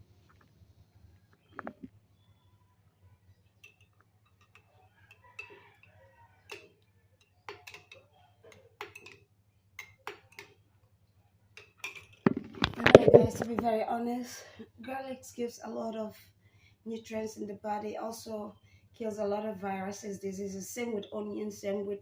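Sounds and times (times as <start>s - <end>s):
faint steady hum: 10.4s - 22.0s.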